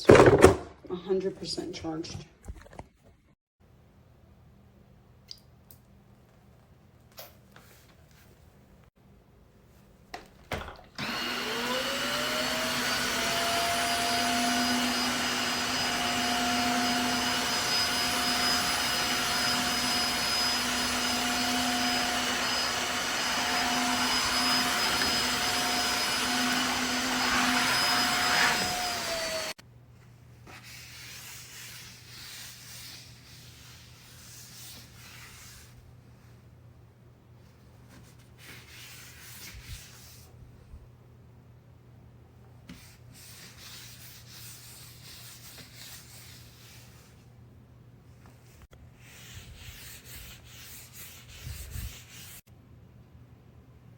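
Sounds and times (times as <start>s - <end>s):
vacuum motor whining: 11.0s - 29.6s.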